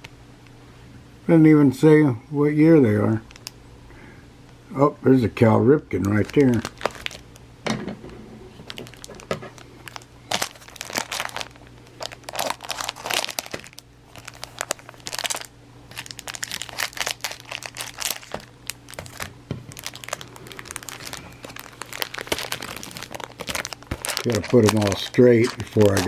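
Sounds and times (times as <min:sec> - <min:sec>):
cellophane wrapper crinkling: 0:03.2 - 0:03.6, 0:05.9 - 0:07.4, 0:08.5 - 0:26.0
cardboard cards being handled: 0:08.6 - 0:26.0.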